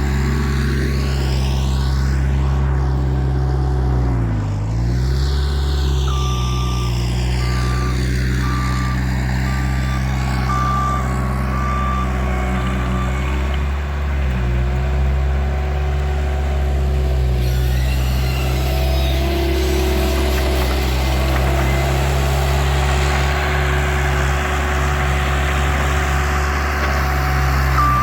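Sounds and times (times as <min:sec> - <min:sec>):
diesel engine running: 0:00.0 - 0:28.0
reversing alarm beeping: 0:05.7 - 0:13.8, 0:26.8 - 0:28.0.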